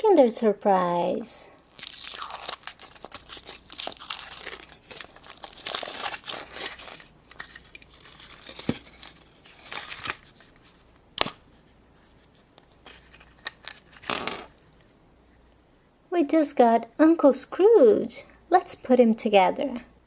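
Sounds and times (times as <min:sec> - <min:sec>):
foil wrapper crinkling: 0:01.6 - 0:10.8.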